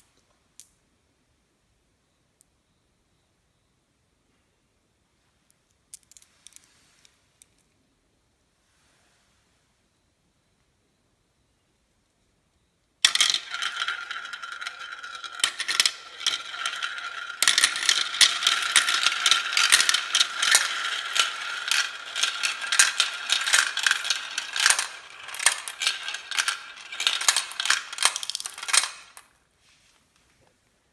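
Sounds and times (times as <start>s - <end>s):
marbles clacking down a track: 13.0s - 29.3s.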